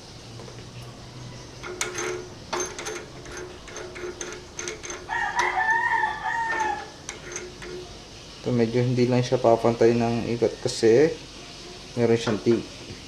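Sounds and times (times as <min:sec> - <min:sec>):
faint clicks and scrapes: 0:00.4 - 0:08.1
rooster crowing: 0:04.8 - 0:07.1.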